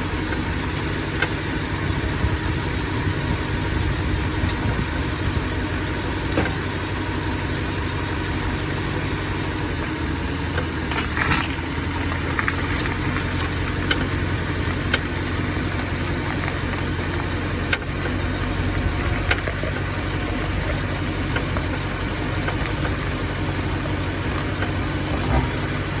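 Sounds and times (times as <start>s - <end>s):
car engine running at low revs: 0.0s - 26.0s
brake creak: 10.4s - 26.0s.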